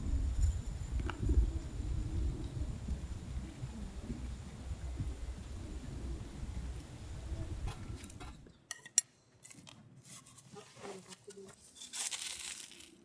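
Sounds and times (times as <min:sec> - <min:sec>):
low wind rumble: 0:00.0 - 0:08.5.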